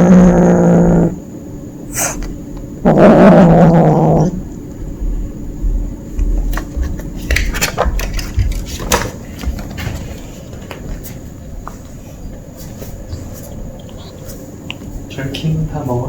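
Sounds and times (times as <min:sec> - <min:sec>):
kitten crunching food: 0:13.1 - 0:14.9.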